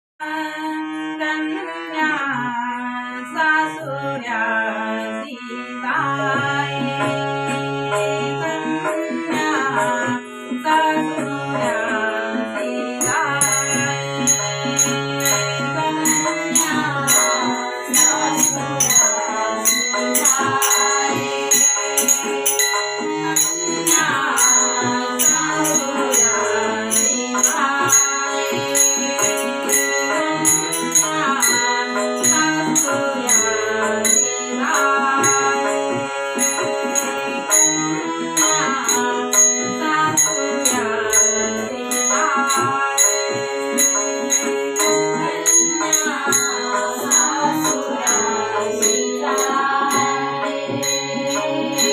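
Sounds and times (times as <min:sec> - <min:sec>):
gliding melodic instrumental lines: 0:12.8 - 0:51.9
jingling percussion beat: 0:13.0 - 0:51.9.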